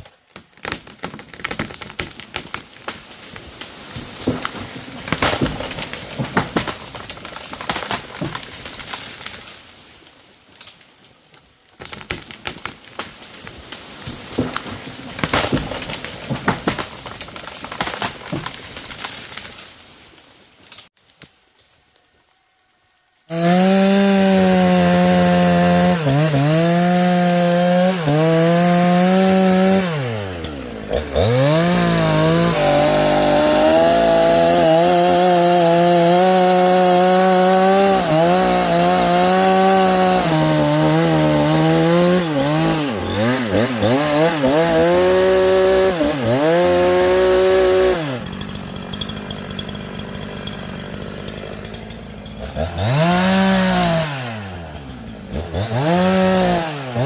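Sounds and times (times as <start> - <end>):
chainsaw cutting a log: 3.7 - 9.3, 14.1 - 19.3, 23.3 - 57.0.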